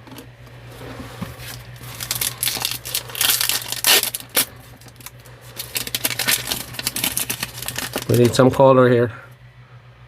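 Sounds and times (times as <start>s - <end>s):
plastic wrapper tearing and crinkling: 1.4s - 8.4s.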